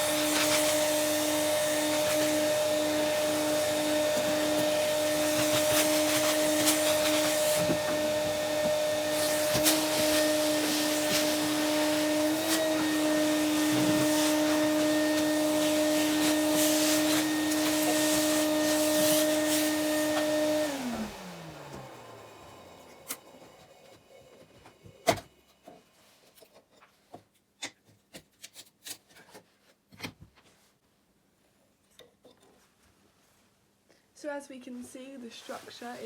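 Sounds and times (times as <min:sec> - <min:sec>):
vacuum cleaner motor running: 0:00.0 - 0:25.3, 0:35.3 - 0:36.0.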